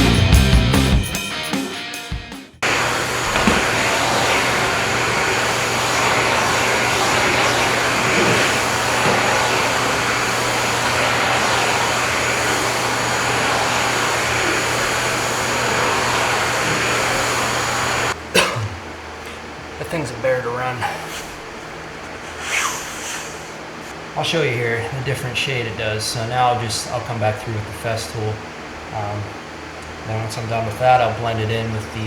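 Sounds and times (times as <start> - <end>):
floor sanding machine whirring: 2.6 - 18.2.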